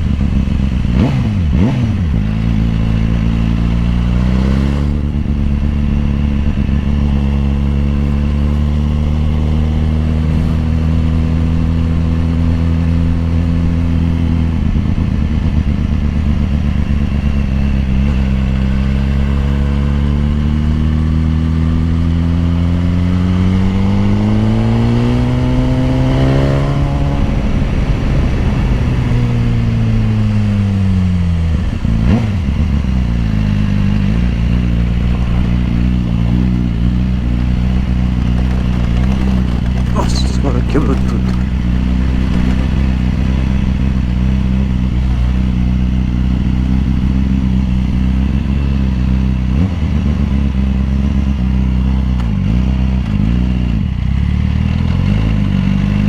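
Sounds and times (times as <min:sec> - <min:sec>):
motorcycle engine accelerating: 0:00.0 - 0:56.0.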